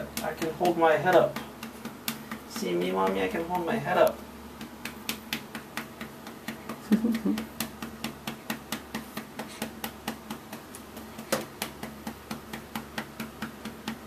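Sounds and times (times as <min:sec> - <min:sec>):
hand patting baby's back: 0:04.5 - 0:14.0.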